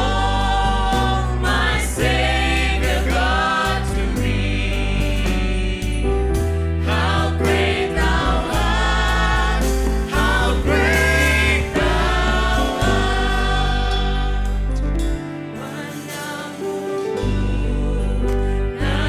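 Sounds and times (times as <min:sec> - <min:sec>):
band with heavy bass: 0:00.0 - 0:15.3
voices singing gospel song: 0:00.0 - 0:19.0.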